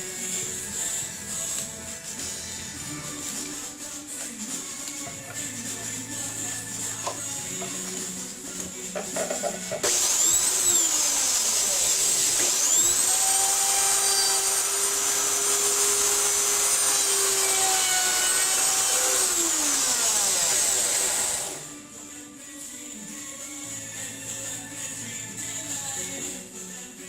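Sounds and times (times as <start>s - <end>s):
power tool motor whining: 9.8s - 21.7s.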